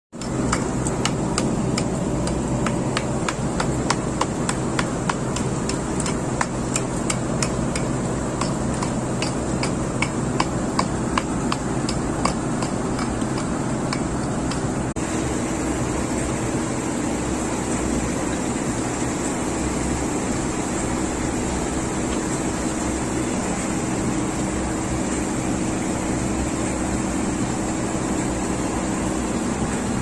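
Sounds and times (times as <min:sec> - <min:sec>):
motor hum with high whine: 0:00.1 - 0:30.0
sharp irregular knocks: 0:00.2 - 0:14.8.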